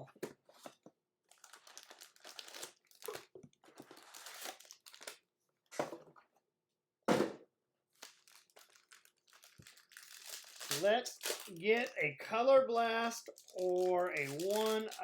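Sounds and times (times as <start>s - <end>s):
plastic wrapping crinkling and tearing: 1.2s - 5.2s, 7.9s - 12.0s, 13.1s - 15.0s.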